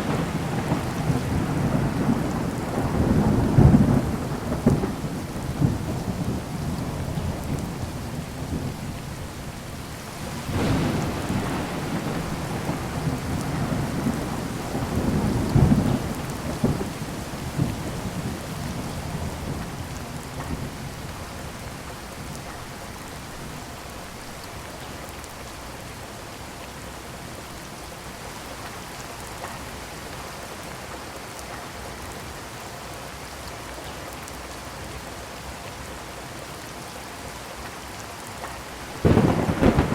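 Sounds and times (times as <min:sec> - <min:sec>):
rolling thunder: 0:00.0 - 0:24.0, 0:38.9 - 0:39.9
heavy rain falling: 0:00.0 - 0:39.9.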